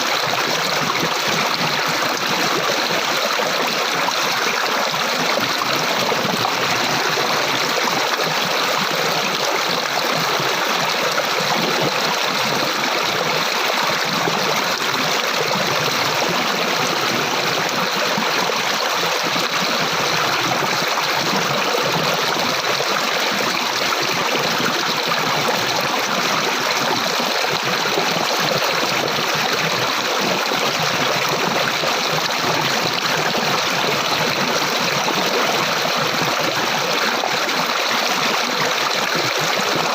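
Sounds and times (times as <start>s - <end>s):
stream water rushing and babbling: 0.0s - 39.9s.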